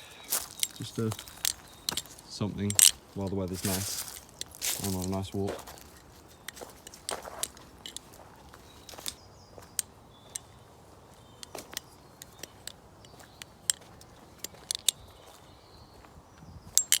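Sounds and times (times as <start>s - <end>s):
butterfly knife clicking and tapping: 0.5s - 3.0s, 11.3s - 15.1s.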